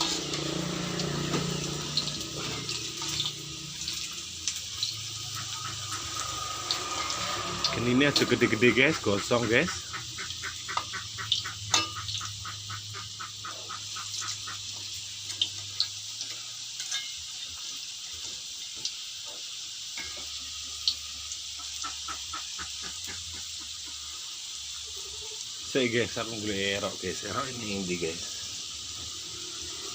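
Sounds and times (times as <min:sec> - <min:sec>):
food sizzling in hot oil: 0:00.0 - 0:29.9.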